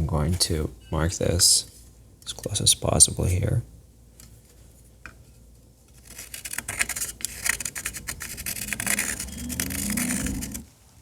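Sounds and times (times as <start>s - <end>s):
marker scratching on plastic: 5.9s - 10.7s.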